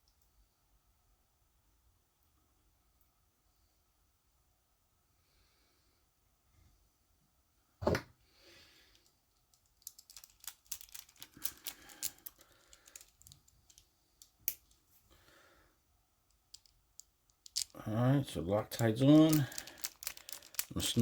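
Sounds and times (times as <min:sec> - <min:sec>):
small parts and tools clicking: 0:08.8 - 0:14.9, 0:16.2 - 0:21.0.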